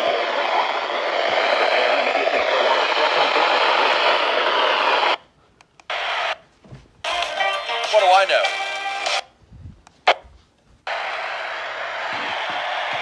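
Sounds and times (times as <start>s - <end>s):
radio static hiss: 0.0s - 5.2s, 5.9s - 6.5s, 7.1s - 9.2s, 10.9s - 13.0s.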